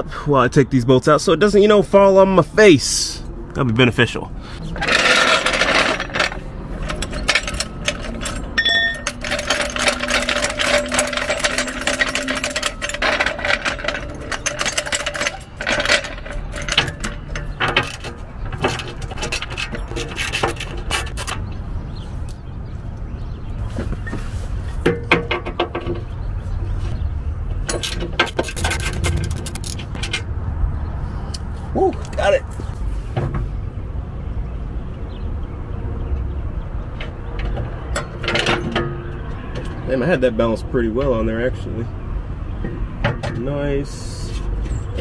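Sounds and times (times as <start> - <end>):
metal clinks of tools: 4.8 - 21.4.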